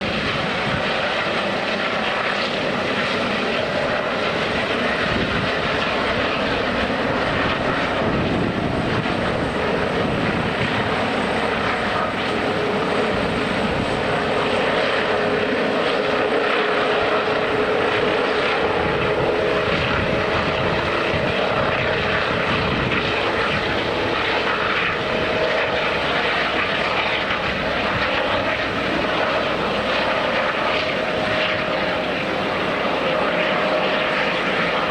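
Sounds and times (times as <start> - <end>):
helicopter engine and rotor: 0.0 - 34.9.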